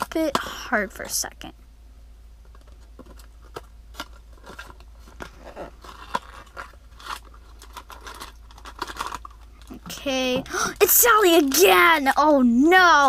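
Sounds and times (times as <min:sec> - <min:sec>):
toy packaging crinkling: 0:02.7 - 0:13.0.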